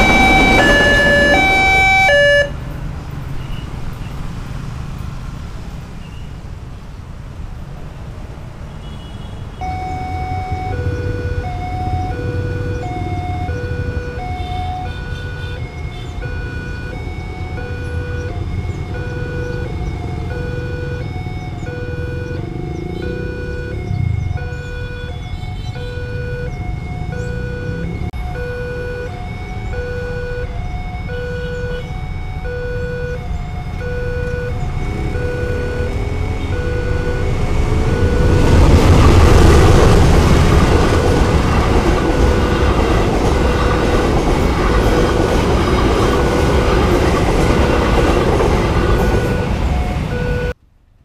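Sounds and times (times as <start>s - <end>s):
two-tone level crossing alarm: 0.0s - 2.6s, 9.6s - 50.6s
vehicle engine rising in pitch: 0.0s - 2.6s, 15.7s - 50.6s.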